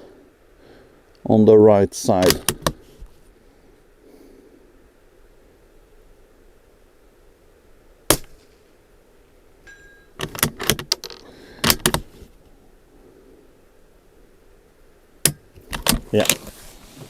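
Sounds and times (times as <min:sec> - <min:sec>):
suppressed rifle shot: 0:08.1 - 0:08.6
distant steel plate ringing: 0:09.6 - 0:10.2
rifle bolt clicking and clacking: 0:10.2 - 0:12.1, 0:15.3 - 0:16.0.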